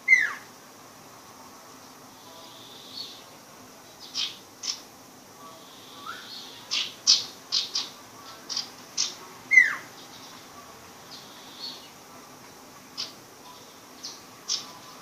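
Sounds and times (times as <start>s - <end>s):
songbird chirping: 0.0s - 0.6s, 1.2s - 15.0s.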